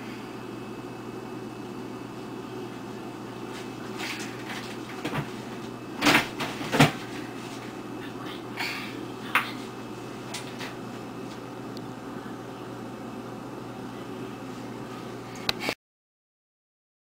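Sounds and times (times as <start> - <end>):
low room hum: 0.0 - 15.8.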